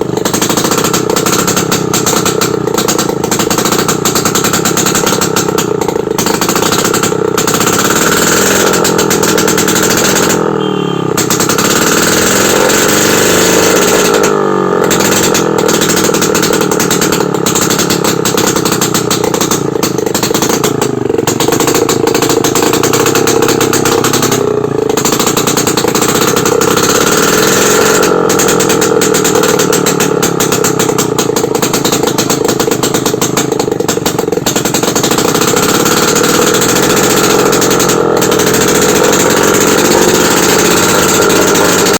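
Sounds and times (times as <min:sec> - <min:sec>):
two-stroke motorcycle engine revving: 0:00.0 - 0:41.9.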